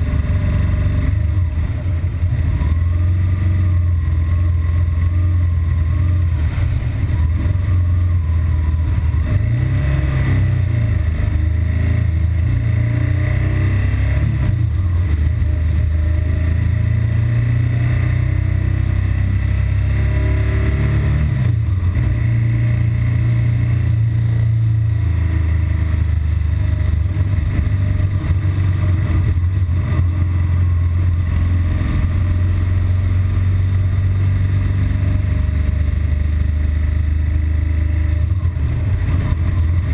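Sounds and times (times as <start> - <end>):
heavy low traffic rumble: 0.0 - 39.9
motorcycle engine running roughly: 14.1 - 17.9, 20.9 - 39.9.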